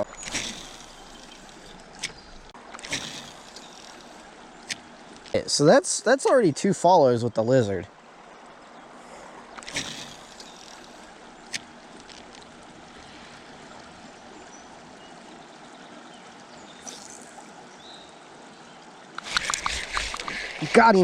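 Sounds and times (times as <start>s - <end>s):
river water running: 0.0s - 21.0s
faint clicks: 0.2s - 5.4s, 19.1s - 20.7s.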